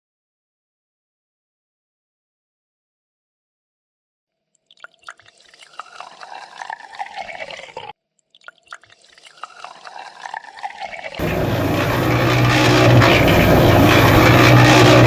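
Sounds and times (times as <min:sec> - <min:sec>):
small drips: 0:04.4 - 0:11.1
liquid pouring and splashing: 0:04.6 - 0:15.0.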